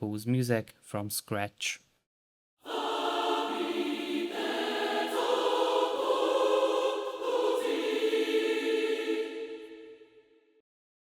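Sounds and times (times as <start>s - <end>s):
mixed choir singing chords: 2.6s - 10.5s.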